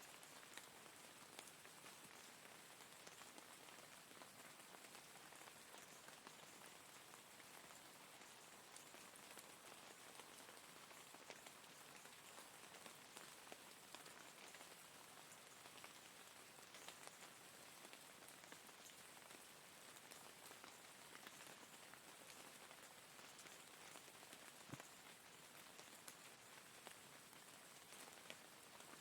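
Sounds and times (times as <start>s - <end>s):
rain drops ticking: 0.0s - 29.0s.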